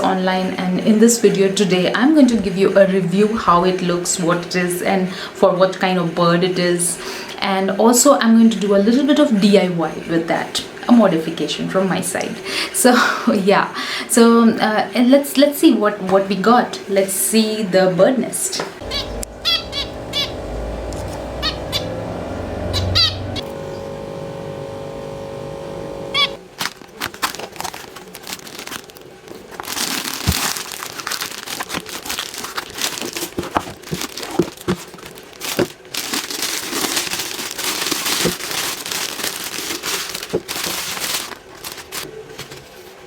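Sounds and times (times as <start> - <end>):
birds chirping: 18.8 - 24.0
steady hum: 18.8 - 26.6
packaging rustling and crackling: 26.4 - 43.0.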